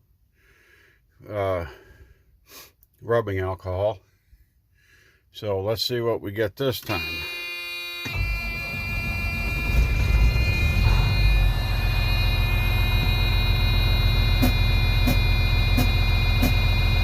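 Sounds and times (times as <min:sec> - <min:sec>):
truck engine idling: 0:08.1 - 0:17.0.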